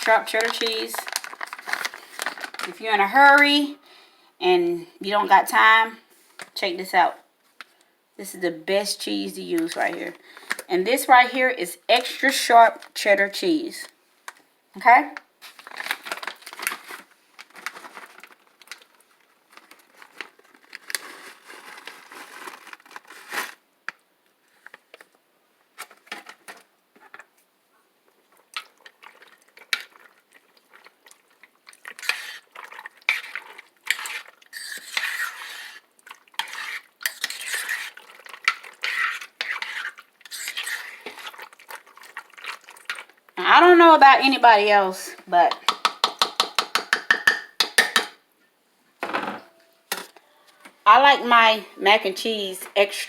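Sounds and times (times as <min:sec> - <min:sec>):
spoon scraping a pot: 0:31.9 - 0:35.8, 0:36.4 - 0:41.4.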